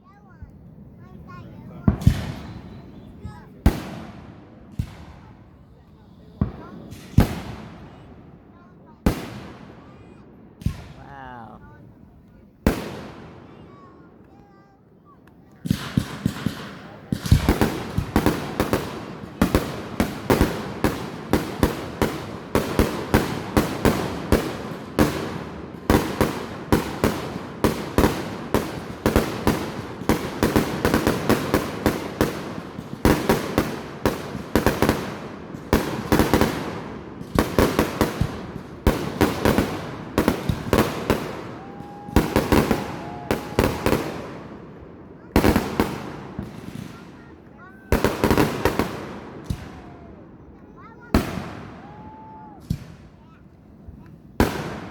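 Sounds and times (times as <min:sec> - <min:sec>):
fireworks bangs: 0:00.1 - 0:54.9.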